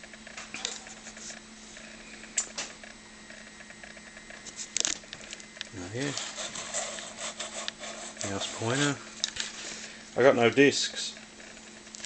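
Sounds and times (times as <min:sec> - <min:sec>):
computer low hum: 0:00.0 - 0:12.0.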